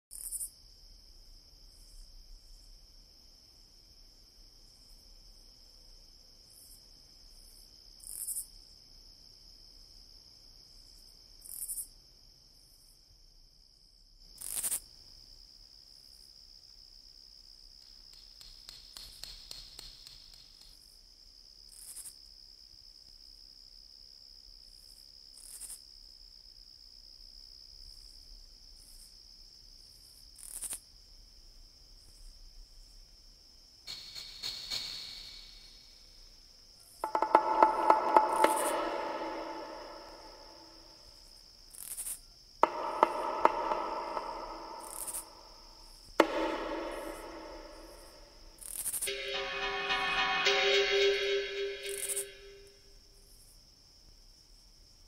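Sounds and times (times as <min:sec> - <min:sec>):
cricket trill: 0:00.1 - 0:55.0
quick run of ticks: 0:17.8 - 0:20.8
short high cricket chirps: 0:33.9 - 0:54.6
sharp hit: 0:37.0 - 0:41.0, 0:42.6 - 0:52.8.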